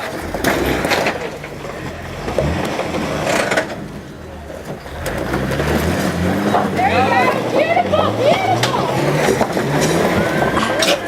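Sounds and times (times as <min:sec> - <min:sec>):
engine revving: 0:00.0 - 0:11.0.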